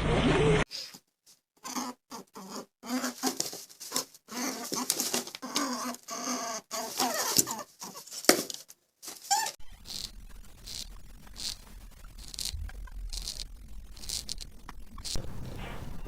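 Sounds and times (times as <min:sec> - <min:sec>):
animal squeaky calls: 0:04.3 - 0:08.0, 0:09.3 - 0:11.6, 0:15.1 - 0:16.0
quiet scratchy noise: 0:08.7 - 0:16.0.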